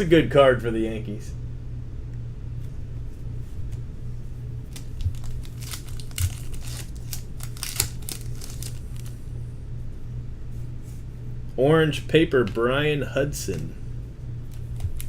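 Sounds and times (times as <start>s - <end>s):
steady low hum: 0.0s - 15.0s
foil wrapper crinkling: 4.7s - 9.2s, 14.5s - 15.0s.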